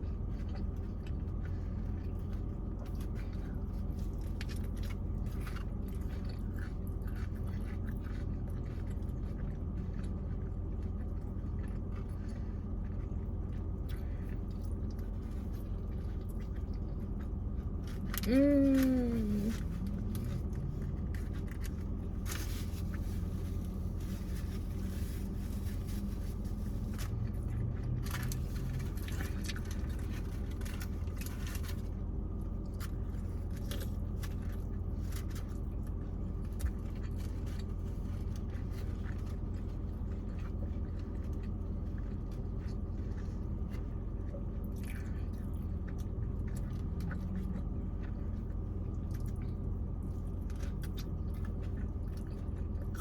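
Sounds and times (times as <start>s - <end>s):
chewing and crunching food: 0.0s - 53.0s
steady low hum: 0.0s - 53.0s.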